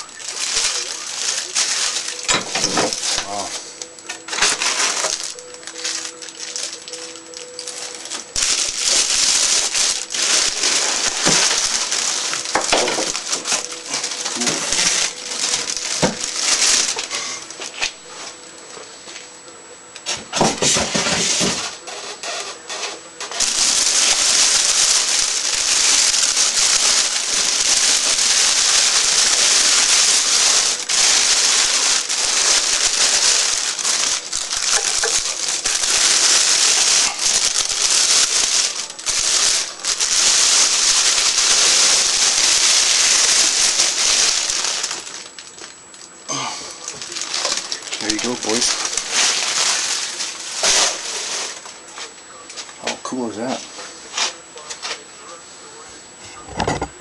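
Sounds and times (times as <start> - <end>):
plastic and styrofoam crinkling: 0.0 - 18.7, 20.0 - 55.4.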